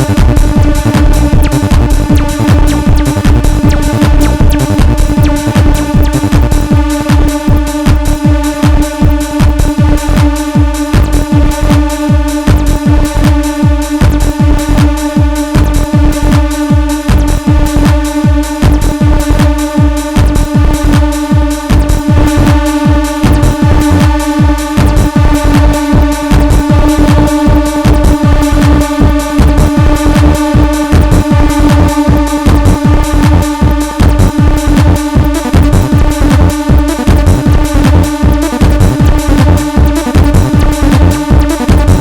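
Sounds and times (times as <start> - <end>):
fast repeating synth pattern: 0.0 - 42.0
steady kick drum: 0.0 - 42.0
long held synth tone: 19.3 - 41.8.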